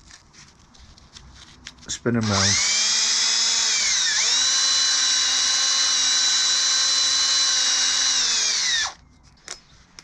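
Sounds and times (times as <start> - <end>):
electric drill whining: 2.2 - 9.0.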